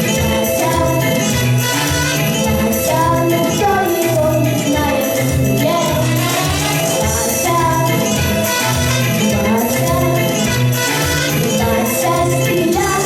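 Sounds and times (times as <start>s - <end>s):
upbeat latin backing track: 0.0s - 13.0s.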